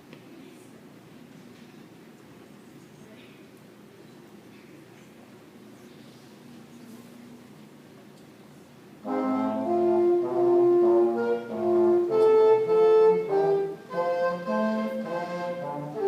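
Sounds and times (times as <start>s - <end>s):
wind band playing chords: 9.0s - 16.0s.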